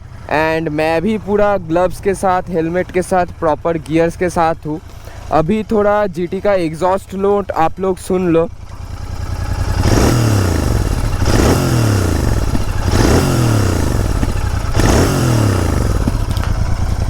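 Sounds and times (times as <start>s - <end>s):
motorcycle engine revving: 0.0s - 7.2s, 8.5s - 17.0s.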